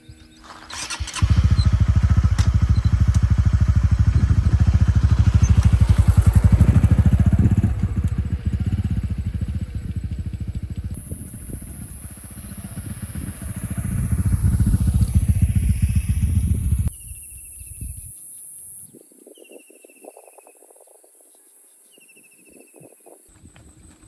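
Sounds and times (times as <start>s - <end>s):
engine running with fast pulse: 0.1s - 16.9s.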